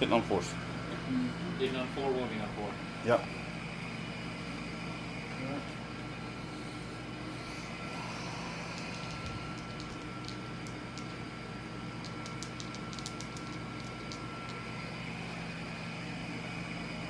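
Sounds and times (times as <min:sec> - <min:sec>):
room hum: 0:00.0 - 0:17.0.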